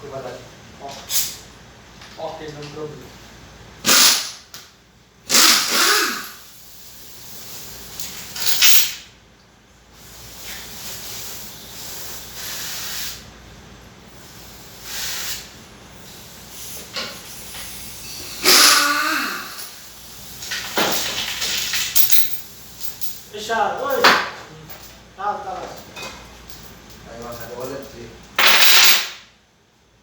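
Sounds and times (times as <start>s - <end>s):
power tool bursts: 3.8s - 4.4s, 5.3s - 6.5s, 18.1s - 19.9s.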